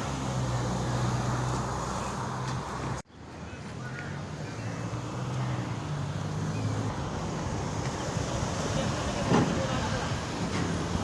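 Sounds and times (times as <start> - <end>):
road-work noise: 0.0 - 11.0.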